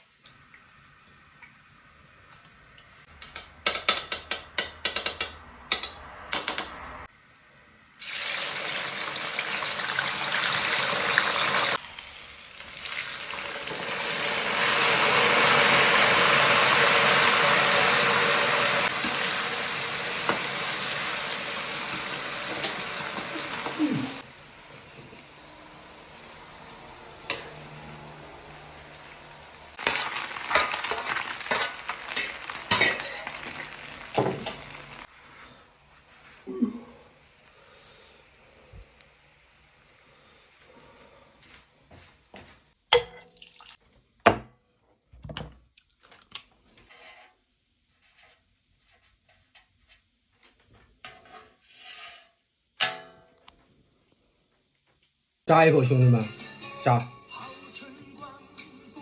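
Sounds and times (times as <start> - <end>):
food sizzling in hot oil: 7.8 - 41.6
utensils clinking on cookware: 29.8 - 34.7.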